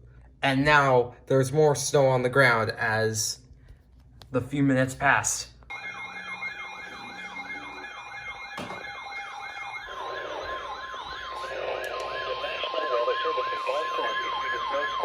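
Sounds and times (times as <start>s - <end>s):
siren-like sweeping alert tone: 5.7s - 15.0s
steady high alert tone: 5.7s - 15.0s.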